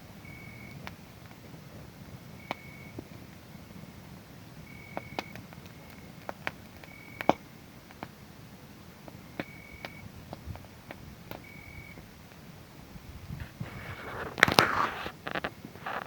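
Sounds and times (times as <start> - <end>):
wood fire crackling and popping: 0.0 - 16.0
cricket chirping: 0.2 - 0.8, 2.4 - 3.0, 4.6 - 6.2, 6.8 - 7.4, 9.3 - 10.1, 11.4 - 12.1.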